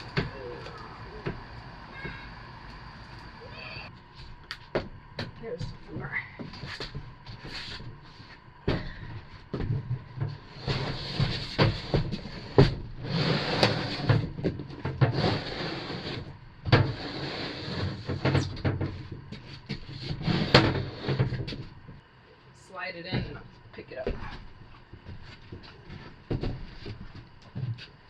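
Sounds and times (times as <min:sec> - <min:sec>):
floor panels scraping: 0:09.7 - 0:21.8.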